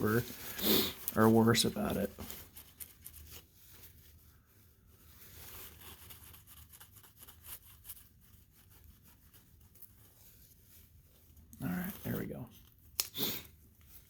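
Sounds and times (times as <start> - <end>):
card rustling in plastic sleeve: 0.0 - 8.1.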